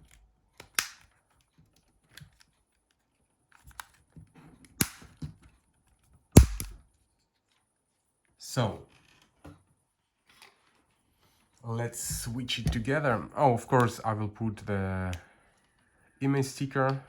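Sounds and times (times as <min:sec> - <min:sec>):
plastic snap with dull knock: 0:06.4 - 0:06.8.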